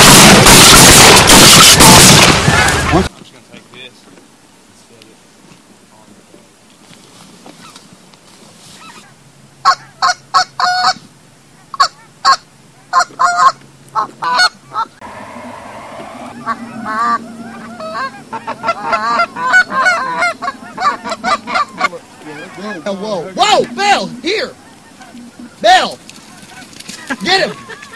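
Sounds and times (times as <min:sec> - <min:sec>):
geese honking: 0:00.0 - 0:03.1, 0:11.6 - 0:27.9.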